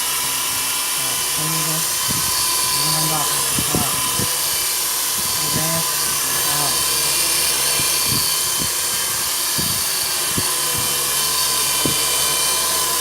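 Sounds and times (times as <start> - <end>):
toy helicopter motor whine: 0.0 - 13.0.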